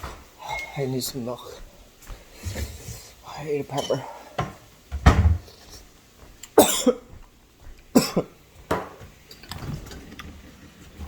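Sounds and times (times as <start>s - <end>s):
person coughing: 6.6s - 7.1s, 8.0s - 8.4s.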